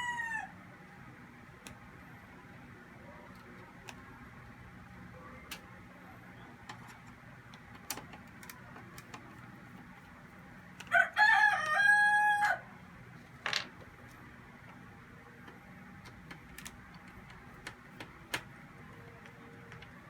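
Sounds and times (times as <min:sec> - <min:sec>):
rooster crowing: 0:00.0 - 0:00.6, 0:10.9 - 0:12.7
faint clicks and knocks: 0:06.6 - 0:10.1, 0:15.4 - 0:20.0.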